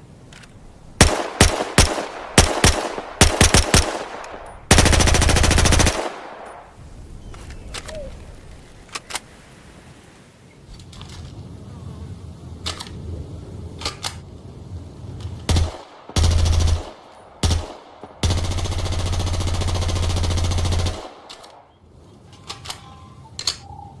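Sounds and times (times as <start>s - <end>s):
sharp clicks: 0.3s - 6.7s, 21.2s - 21.7s
submachine gun firing bursts: 1.0s - 6.8s, 15.5s - 21.6s.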